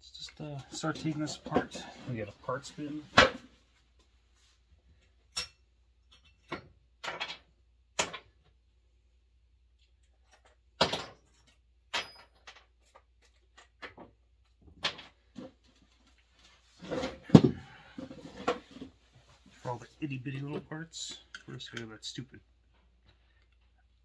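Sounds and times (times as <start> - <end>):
objects knocking and clattering: 6.0 - 8.4, 16.8 - 19.4.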